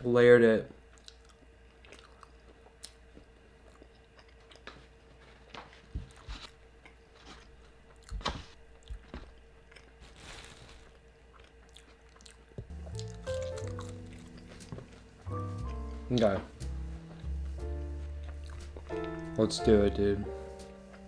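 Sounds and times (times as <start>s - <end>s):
chewing and biting food: 0.9s - 16.4s, 18.0s - 19.2s.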